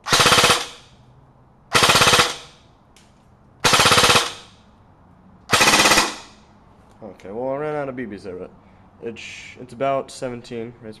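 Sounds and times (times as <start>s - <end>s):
airsoft rifle full-auto bursts: 0.0s - 0.8s, 1.7s - 2.6s, 3.6s - 4.5s, 5.5s - 6.4s.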